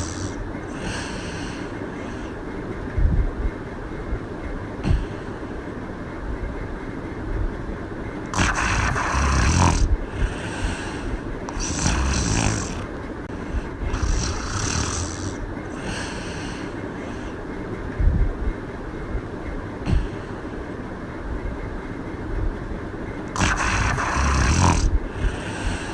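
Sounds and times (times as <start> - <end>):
woman snoring: 0.0 - 2.3, 8.3 - 12.9, 13.8 - 17.3, 23.4 - 25.9
low background rumble: 0.0 - 25.9.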